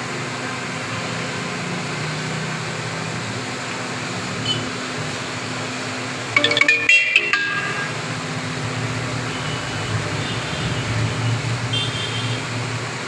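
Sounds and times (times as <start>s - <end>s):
steady mechanical hum: 3.1s - 13.0s
bright ringing tones: 6.4s - 8.3s.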